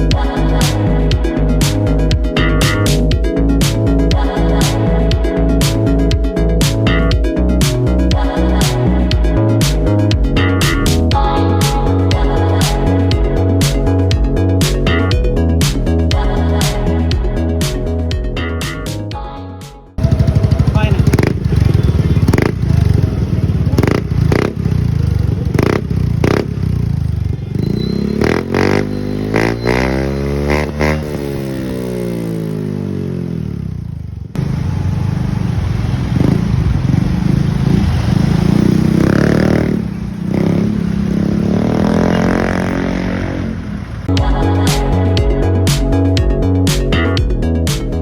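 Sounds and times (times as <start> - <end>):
scooter engine revving: 20.0 - 44.1.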